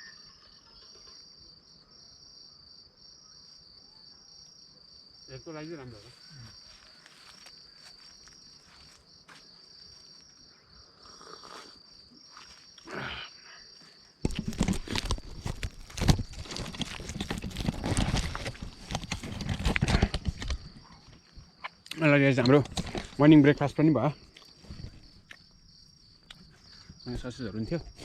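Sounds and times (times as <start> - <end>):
crickets chirping: 0.0 - 28.0
close rustling and knocking: 14.2 - 21.4.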